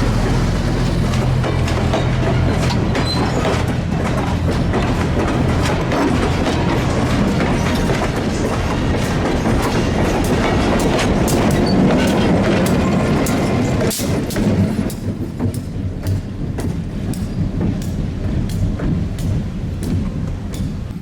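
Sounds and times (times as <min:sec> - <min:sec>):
train wheels clacking on rails: 0:00.0 - 0:21.0.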